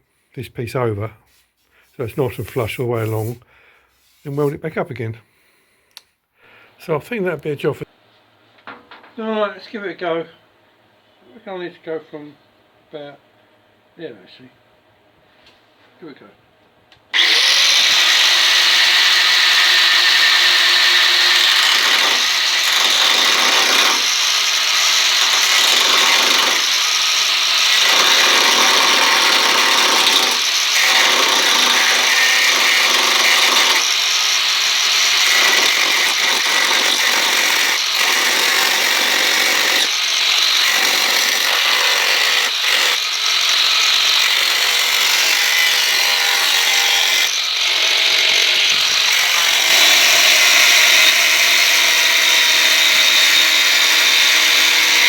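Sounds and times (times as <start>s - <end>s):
angle grinder cutting steel: 17.2s - 55.0s.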